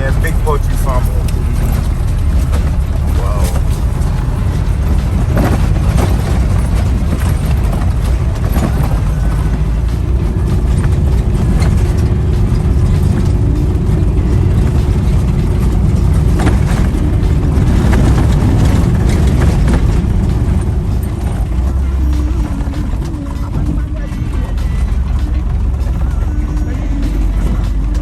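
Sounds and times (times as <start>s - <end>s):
car road and engine rumble: 0.0s - 28.0s.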